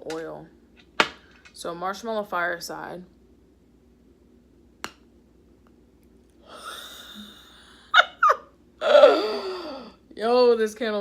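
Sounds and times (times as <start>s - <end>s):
woman gasping: 6.4s - 7.8s, 8.8s - 10.0s.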